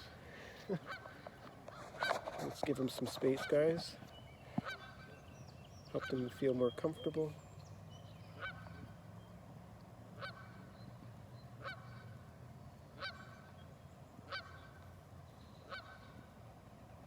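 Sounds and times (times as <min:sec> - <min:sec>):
geese honking: 0:00.7 - 0:05.1, 0:05.9 - 0:06.5, 0:08.4 - 0:08.8, 0:10.2 - 0:10.7, 0:11.6 - 0:12.2, 0:13.0 - 0:13.5, 0:14.3 - 0:14.8, 0:15.7 - 0:16.2.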